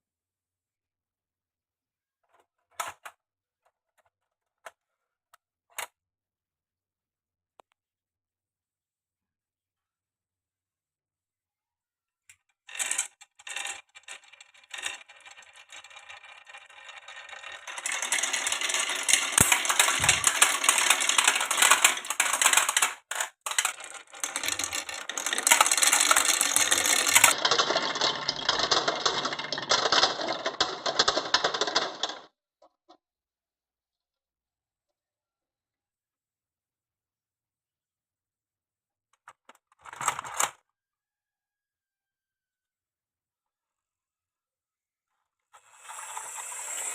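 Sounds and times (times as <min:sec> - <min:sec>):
marbles rattling down wooden run: 0:12.7 - 0:32.3.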